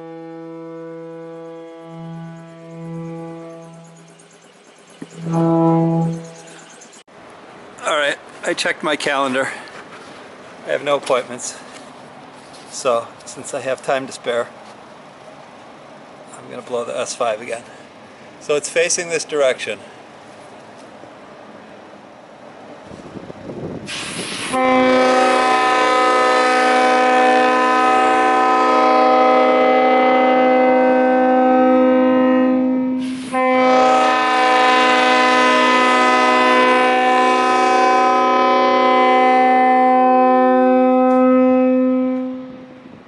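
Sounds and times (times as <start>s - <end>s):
locomotive air horn: 0.0s - 4.3s, 5.0s - 6.6s, 23.9s - 43.0s
rush of air from valve: 23.8s - 24.6s, 33.0s - 33.4s.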